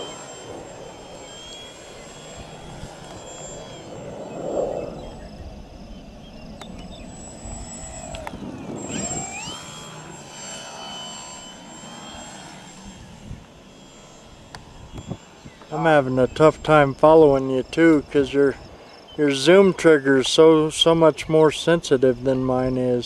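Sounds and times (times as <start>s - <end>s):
wind noise on microphone: 0.0s - 10.1s, 12.3s - 13.5s, 14.3s - 18.9s
model airplane motor whining: 0.0s - 23.0s.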